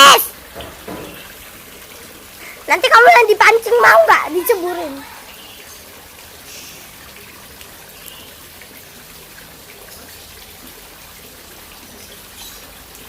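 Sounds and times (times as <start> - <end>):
faint water splashes: 0.0 - 13.0
trickle of running water: 0.0 - 13.0.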